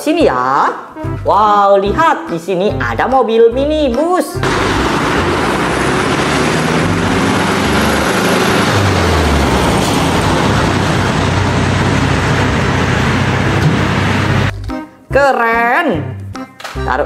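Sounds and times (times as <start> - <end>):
low engine rumble: 4.4 - 14.5.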